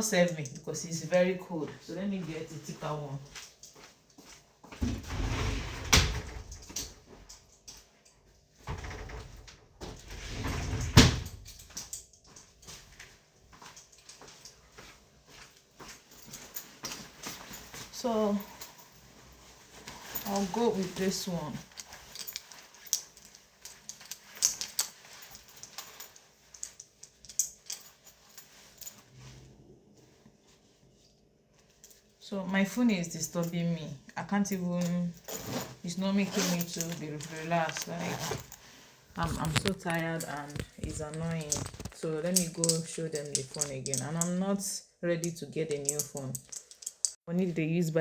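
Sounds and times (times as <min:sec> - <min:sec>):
rustling: 0:13.8 - 0:32.1, 0:35.2 - 0:44.3.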